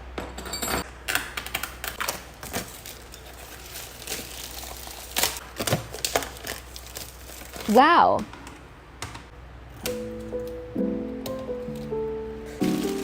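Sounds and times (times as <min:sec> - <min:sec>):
packaging clicks and rustles: 0:01.1 - 0:07.8, 0:12.6 - 0:13.0.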